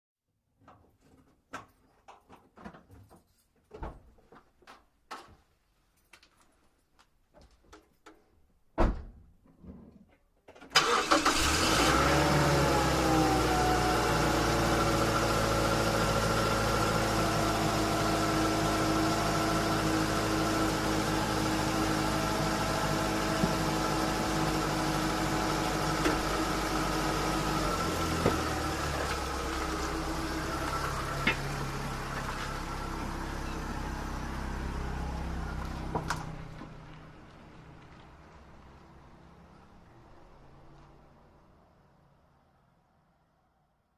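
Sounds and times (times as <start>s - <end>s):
car engine cranking and idling: 10.7s - 40.9s.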